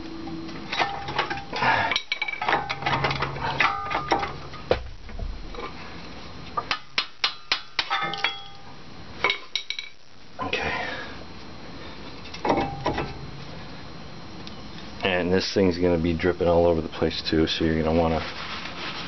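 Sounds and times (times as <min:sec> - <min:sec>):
metal knocks and clanks: 0:00.8 - 0:05.7.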